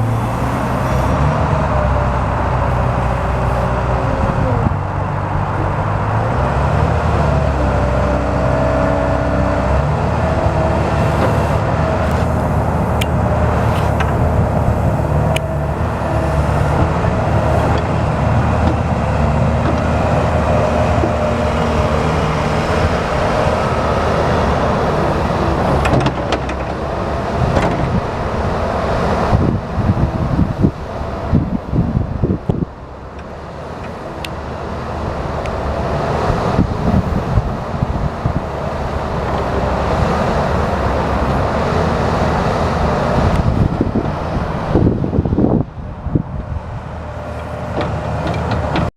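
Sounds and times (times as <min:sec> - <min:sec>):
diesel engine running: 0:00.0 - 0:48.9
high whine: 0:10.0 - 0:17.8.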